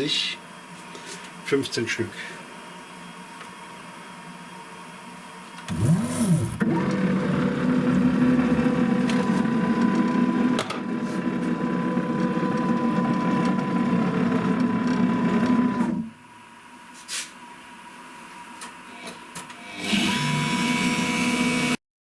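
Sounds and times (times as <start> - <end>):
milling machine motors humming: 2.8 - 16.5.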